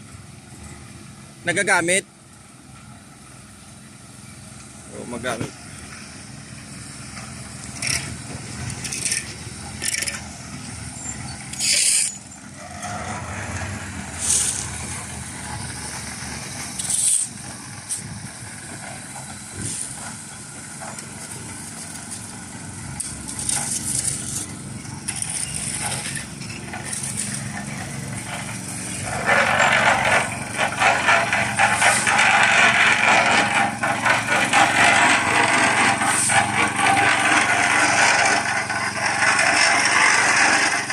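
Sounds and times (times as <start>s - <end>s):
small engine running: 0.0s - 40.9s
sharp knocks and scrapes: 7.0s - 40.9s
loud rasping scrape: 7.4s - 20.2s, 23.0s - 40.9s.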